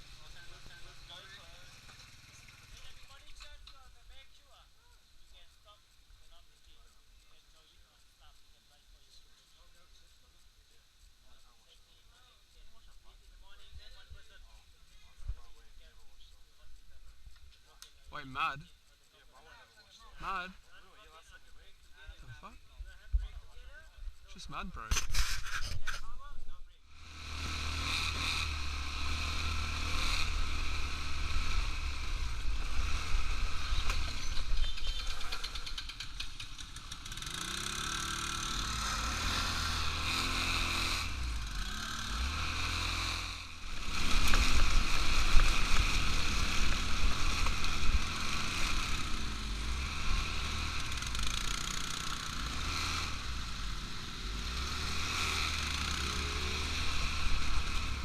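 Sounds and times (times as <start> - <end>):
atv engine running: 0.0 - 8.3, 26.9 - 58.0.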